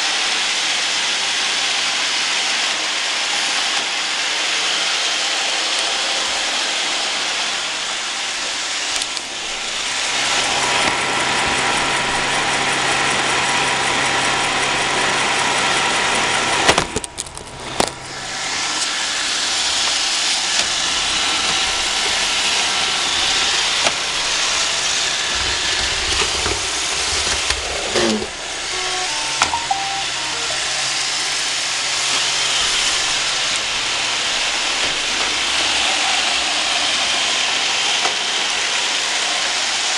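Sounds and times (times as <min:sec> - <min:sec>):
robot vacuum whirring: 0:02.6 - 0:12.6, 0:16.0 - 0:39.8.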